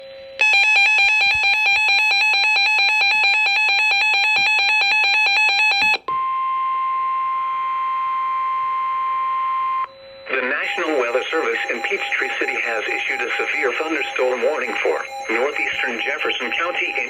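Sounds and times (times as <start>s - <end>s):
electronic alarm warbling: 10.6s - 17.0s
steady warning tone: 10.6s - 17.0s.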